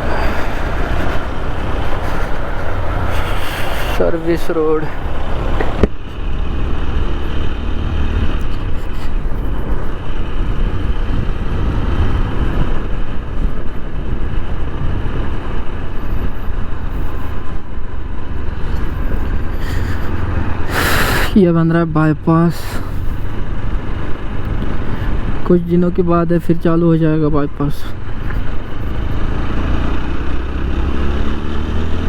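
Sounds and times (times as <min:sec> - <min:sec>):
motorcycle engine running: 0:00.0 - 0:20.7, 0:27.9 - 0:32.0
wind rush on microphone: 0:00.0 - 0:21.4, 0:22.4 - 0:26.4.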